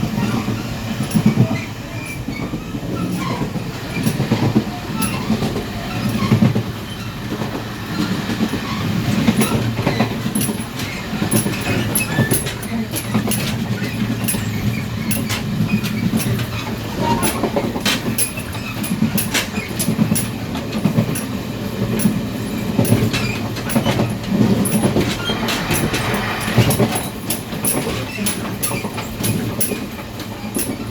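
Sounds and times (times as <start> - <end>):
train low rumble: 0.0 - 30.9
train wheels clicking and clanking: 0.0 - 30.9.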